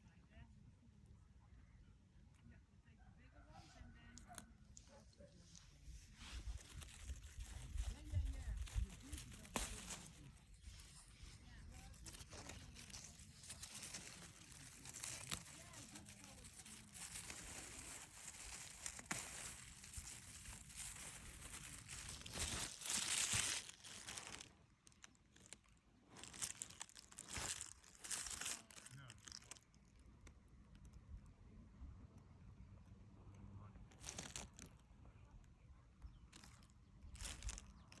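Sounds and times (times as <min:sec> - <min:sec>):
herb plants rustling and tearing: 0:05.5 - 0:30.0, 0:33.9 - 0:34.8, 0:36.3 - 0:38.0.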